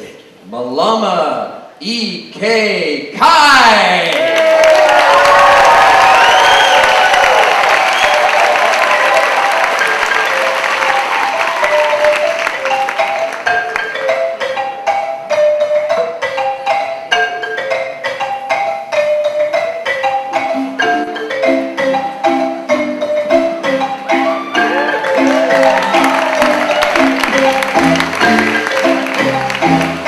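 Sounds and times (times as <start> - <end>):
applause: 4.0 - 13.9, 24.9 - 30.0
mallet percussion melody: 6.9 - 30.0.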